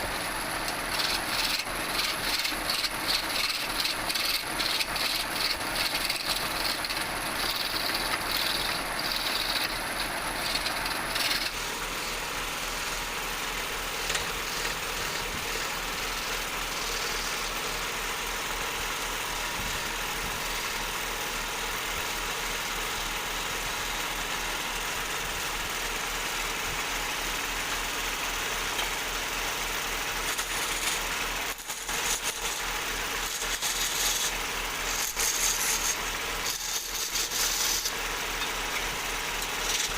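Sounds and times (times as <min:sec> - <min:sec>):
low machine hum: 0:00.0 - 0:39.9
lathe tool cutting wood hiss: 0:14.3 - 0:18.0, 0:29.3 - 0:38.4.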